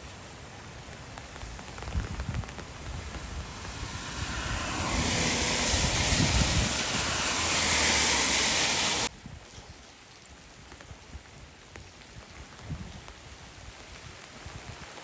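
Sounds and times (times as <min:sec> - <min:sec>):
rain pattering: 0:00.2 - 0:09.1, 0:09.9 - 0:15.0
tyres hissing on wet road: 0:01.4 - 0:09.1.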